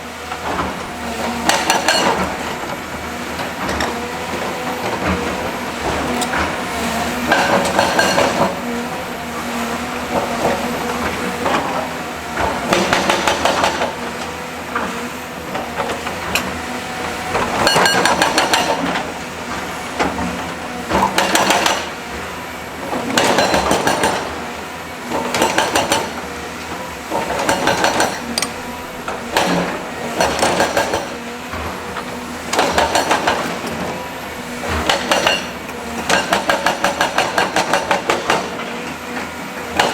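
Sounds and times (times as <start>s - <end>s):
heavy construction machine running: 0.0s - 39.9s.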